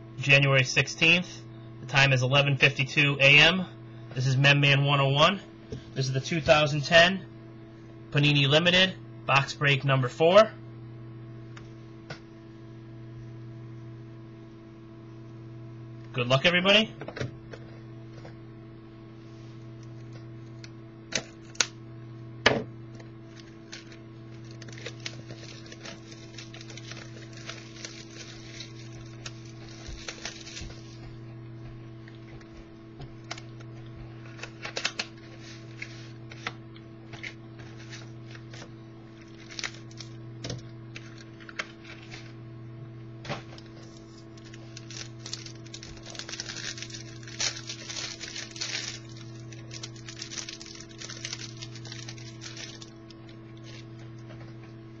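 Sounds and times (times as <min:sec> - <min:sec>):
steady electrical hum: 0:00.0 - 0:55.0
packaging crinkling and rustling: 0:23.0 - 0:31.1, 0:33.2 - 0:40.2, 0:43.4 - 0:54.2.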